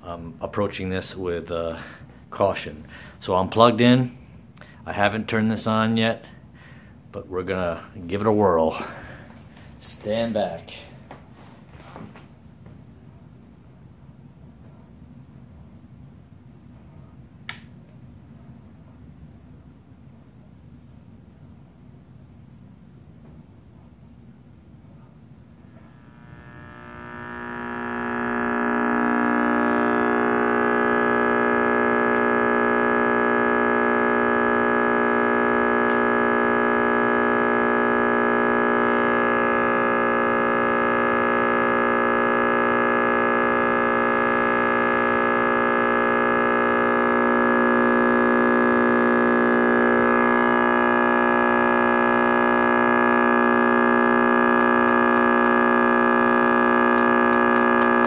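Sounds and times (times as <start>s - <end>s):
radio speaker hum: 0.0s - 12.3s, 25.0s - 58.0s.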